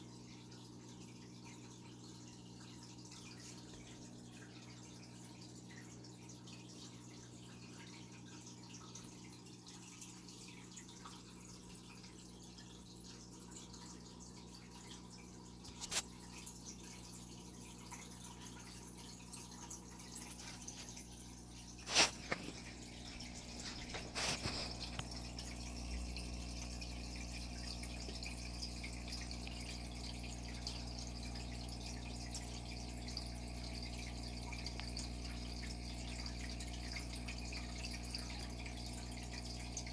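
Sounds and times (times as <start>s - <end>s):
water trickling and dripping: 0.0s - 39.9s.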